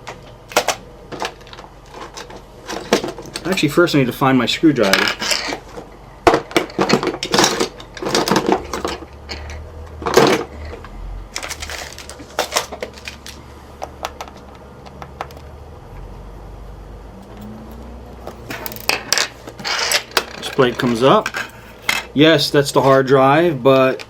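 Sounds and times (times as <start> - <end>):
hand tools clattering: 6.3 - 10.8, 11.4 - 13.4.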